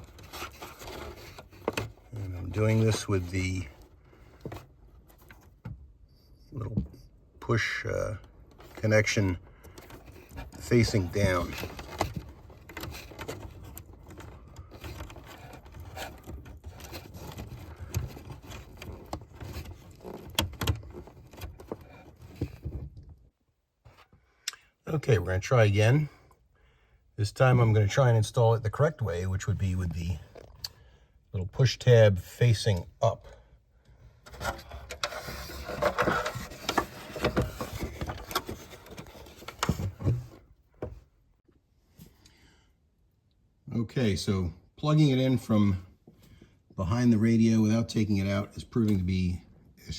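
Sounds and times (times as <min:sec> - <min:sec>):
wiring and plastic trim rustling: 0:00.0 - 0:06.0, 0:06.6 - 0:23.3, 0:33.8 - 0:41.1.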